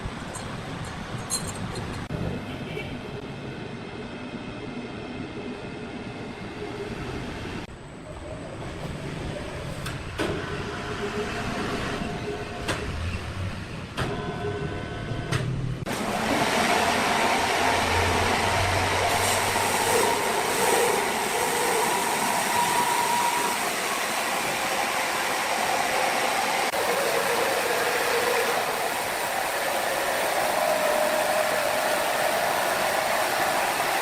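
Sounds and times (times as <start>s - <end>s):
sawmill machinery running: 15.9s - 34.0s.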